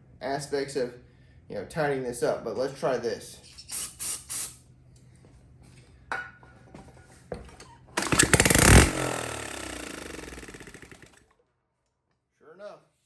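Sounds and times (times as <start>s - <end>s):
small engine firing and revving: 8.0s - 11.2s.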